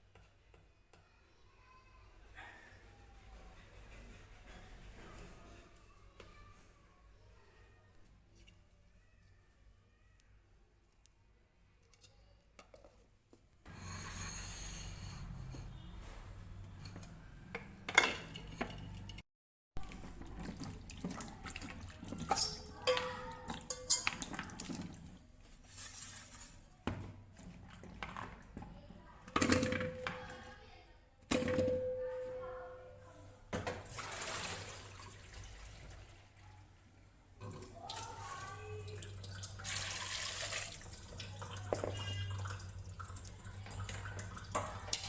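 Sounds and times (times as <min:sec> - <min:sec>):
dishes and utensils clinking: 0:16.7 - 0:19.2, 0:20.0 - 0:25.1, 0:29.3 - 0:30.4, 0:31.3 - 0:32.6, 0:41.6 - 0:42.6
running water: 0:37.4 - 0:45.0.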